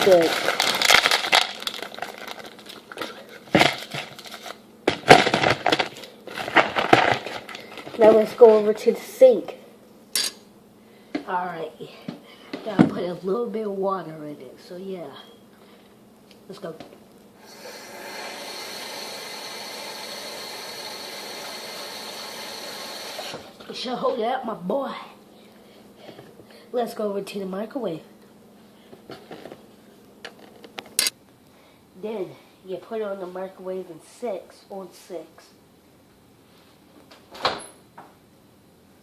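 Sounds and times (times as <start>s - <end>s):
dry noodles crunching: 0.0s - 4.6s
plastic wrapper crinkling: 0.0s - 8.6s.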